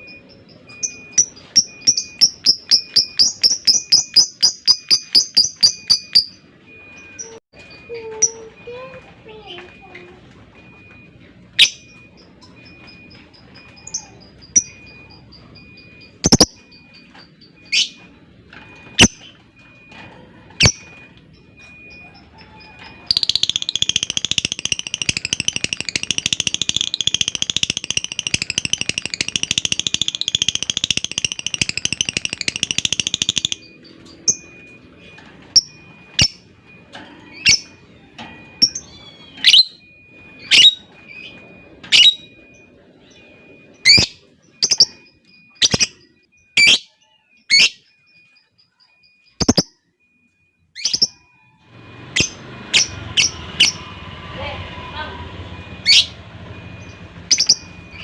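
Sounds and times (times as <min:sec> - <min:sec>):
bird chirping and trilling: 0:00.0 - 0:07.4, 0:11.6 - 0:18.1, 0:23.1 - 0:34.6, 0:37.3 - 0:49.8, 0:52.0 - 0:54.0, 0:55.8 - 0:56.2, 0:56.8 - 0:58.0.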